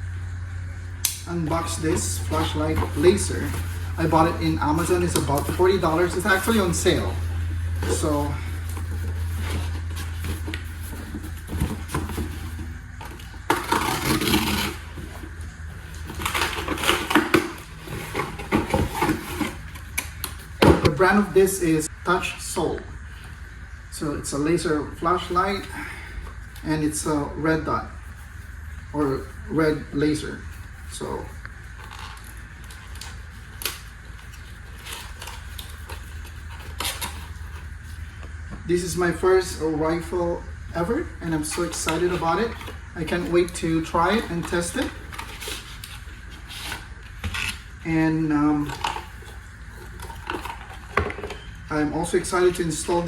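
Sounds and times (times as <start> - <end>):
steady low hum: 0.0 - 53.0
packaging rustling and crinkling: 1.6 - 21.0, 30.5 - 38.4, 41.4 - 47.8, 48.5 - 51.5.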